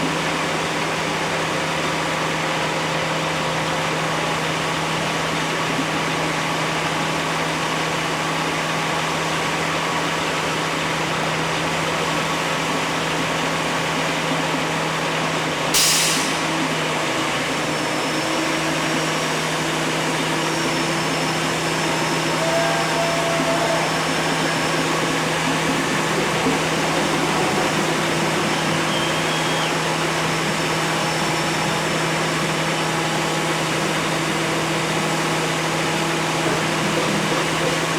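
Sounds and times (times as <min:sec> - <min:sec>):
engine running steadily: 0:00.0 - 0:37.9
short sharp hiss: 0:15.8 - 0:16.5.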